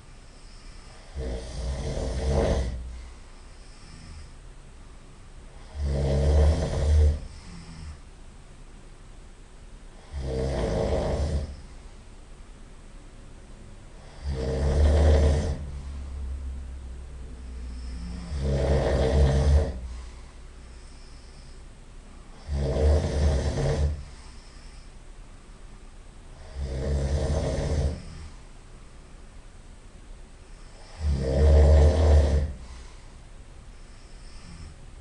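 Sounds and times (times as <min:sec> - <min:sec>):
quiet breathing: 0:00.0 - 0:08.2, 0:09.8 - 0:12.3, 0:13.6 - 0:25.4, 0:26.3 - 0:29.3, 0:30.3 - 0:35.0
person snoring loudly: 0:00.4 - 0:03.0, 0:05.5 - 0:08.0, 0:09.9 - 0:11.7, 0:14.0 - 0:16.0, 0:17.5 - 0:20.0, 0:22.3 - 0:24.8, 0:26.4 - 0:28.4, 0:30.6 - 0:32.8.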